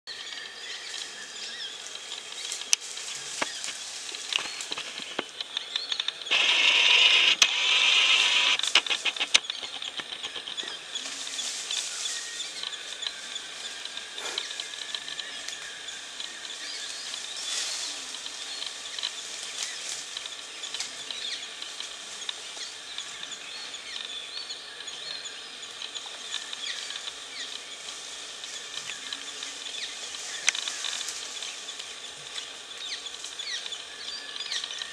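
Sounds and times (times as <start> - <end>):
insects chorus: 0.1 - 34.9
bird calls: 0.2 - 34.9
loud dense hiss: 0.8 - 34.9
clicks: 4.2 - 10.7.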